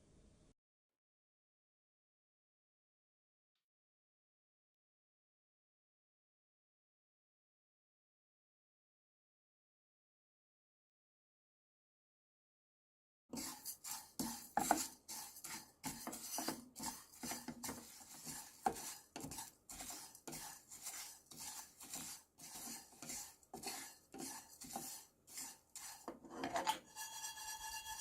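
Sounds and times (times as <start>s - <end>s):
utensil scraping a dish: 13.3s - 28.0s.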